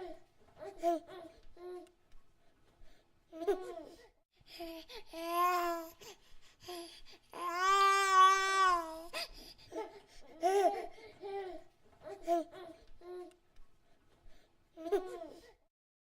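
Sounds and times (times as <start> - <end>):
baby crying: 4.6 - 6.0, 6.7 - 13.3
baby babbling: 4.6 - 6.1, 6.7 - 13.3.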